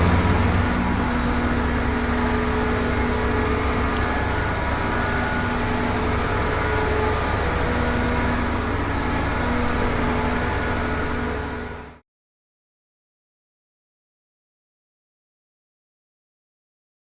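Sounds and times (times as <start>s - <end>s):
whining tones: 0.0s - 11.8s
truck engine rumble: 0.0s - 12.0s.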